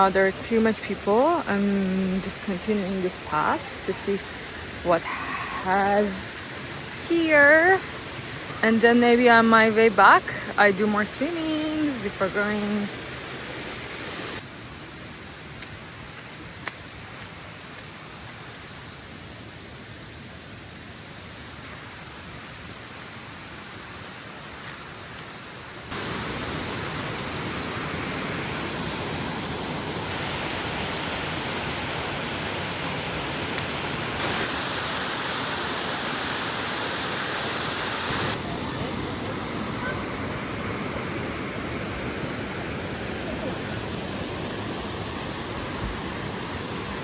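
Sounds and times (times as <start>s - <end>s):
waterfall rushing: 0.0s - 14.4s, 25.9s - 47.0s.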